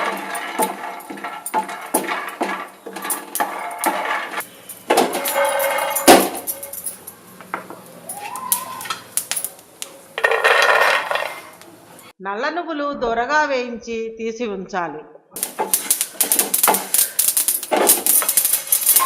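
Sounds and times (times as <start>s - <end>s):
peanuts rattling in a pan: 0.0s - 4.4s, 15.4s - 19.0s.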